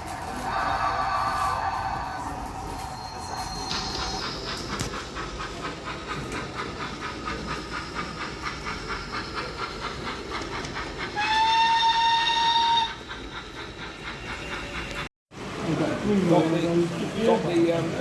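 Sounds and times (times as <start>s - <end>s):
model steam locomotive chuffing: 0.0s - 18.0s
steam locomotive whistle: 11.2s - 13.1s.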